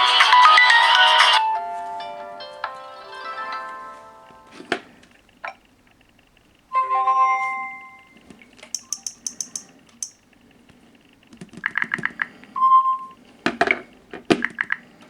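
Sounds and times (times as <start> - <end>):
mobile phone clicks and taps: 8.7 - 10.2, 11.3 - 12.3.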